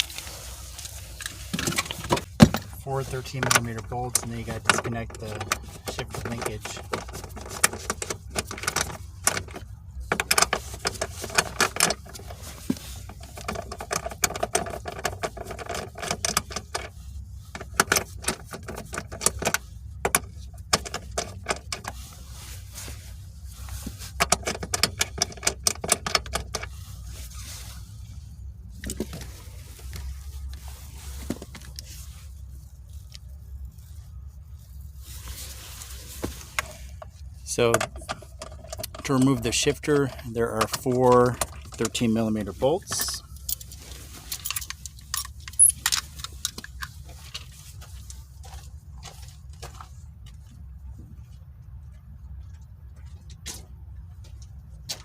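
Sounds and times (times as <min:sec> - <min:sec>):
hand tools clicking and clattering: 0:00.8 - 0:16.9, 0:36.5 - 0:47.5.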